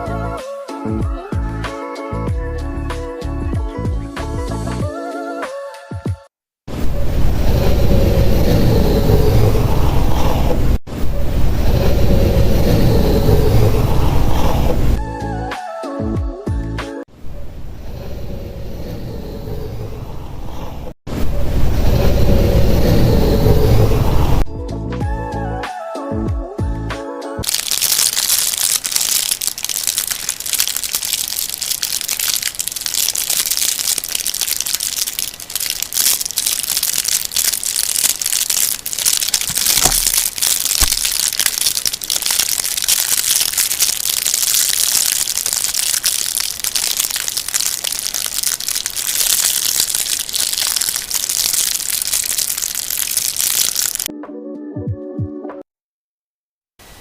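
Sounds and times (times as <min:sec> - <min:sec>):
material crinkling and crackling: 0:27.4 - 0:54.1.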